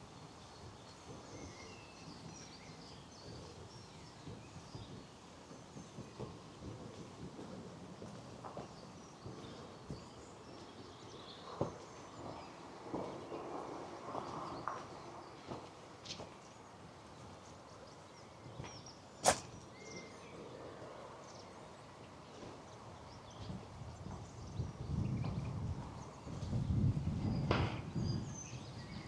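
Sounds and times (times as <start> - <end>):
birdsong: 0.1 - 6.8, 8.0 - 29.0
sharp click: 19.2 - 19.6.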